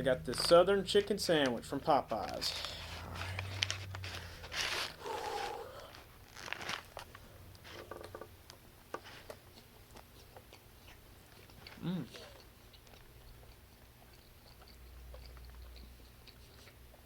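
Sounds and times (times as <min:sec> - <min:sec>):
sandwich wrapper crinkling: 0:02.2 - 0:07.3.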